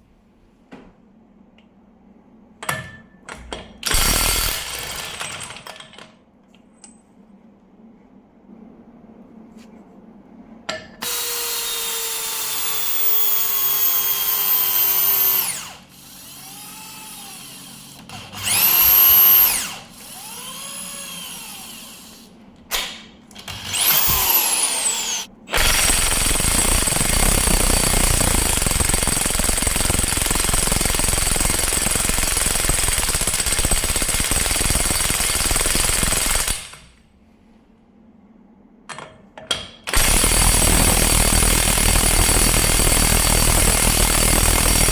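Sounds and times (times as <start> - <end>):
impact wrench motor whining: 3.9 - 5.5, 11.0 - 22.3, 23.5 - 36.9, 39.9 - 44.9
impact wrench hammering: 23.8 - 36.8, 39.9 - 44.9.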